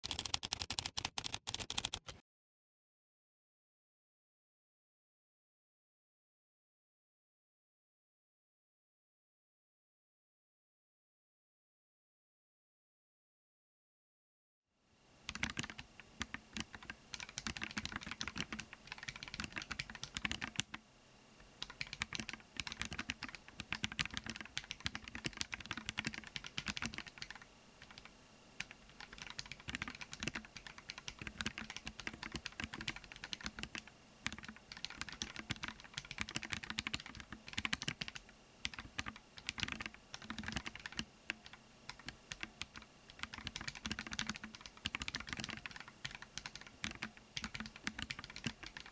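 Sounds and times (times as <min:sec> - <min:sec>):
keyboard keystroke clicks: 0:00.0 - 0:02.2.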